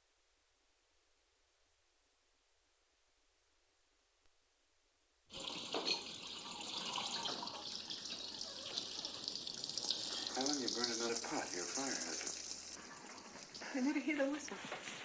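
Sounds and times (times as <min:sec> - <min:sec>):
water hissing from tap: 0:05.3 - 0:14.5.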